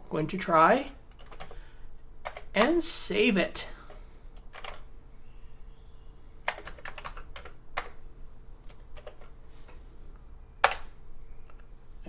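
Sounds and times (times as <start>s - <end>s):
computer keyboard keystrokes: 1.1s - 1.6s, 3.9s - 4.9s, 6.5s - 8.0s, 8.6s - 9.3s, 10.6s - 10.9s.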